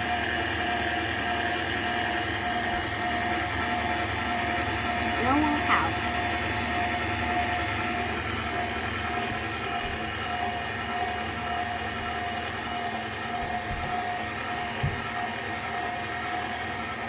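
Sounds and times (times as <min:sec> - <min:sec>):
stand mixer motor whining: 0:00.0 - 0:17.0.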